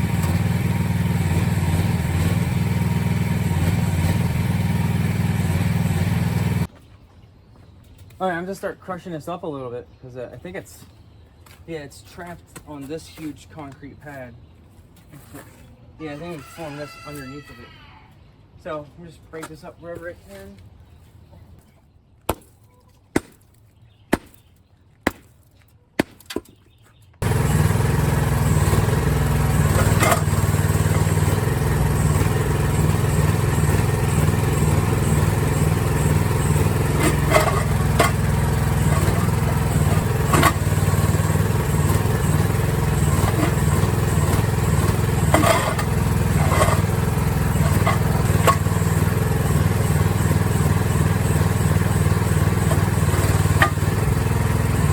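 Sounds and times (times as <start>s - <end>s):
excavator engine running under load: 0.0s - 6.7s, 27.2s - 54.9s.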